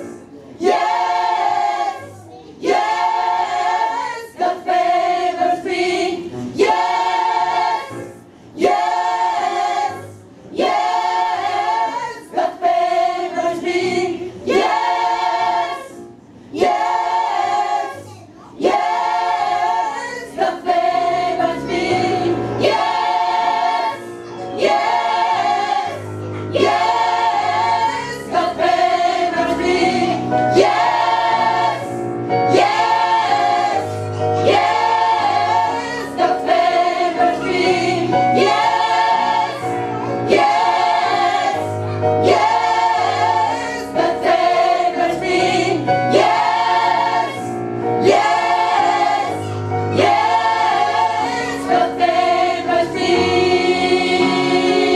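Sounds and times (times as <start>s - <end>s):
gospel choir singing: 0.0s - 54.9s.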